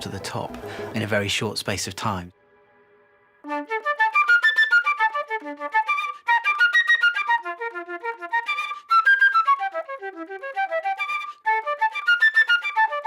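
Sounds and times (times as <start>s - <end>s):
solo flute fast melody: 3.4s - 13.0s.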